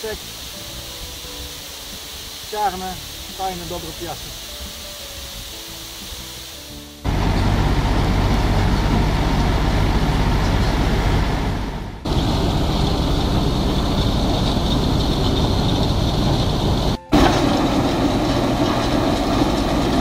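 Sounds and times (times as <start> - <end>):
vehicle engine rumbling: 5.5 - 20.0.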